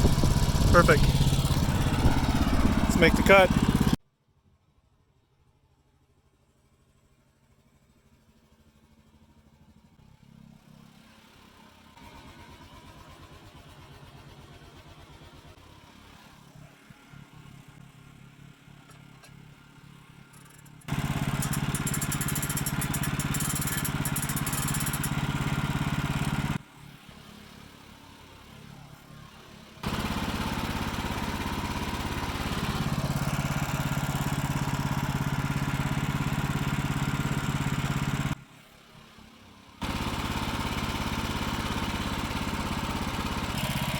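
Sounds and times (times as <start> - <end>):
bandsaw mill cutting log: 0.0 - 4.0, 20.4 - 26.6, 29.8 - 38.4, 39.8 - 43.9.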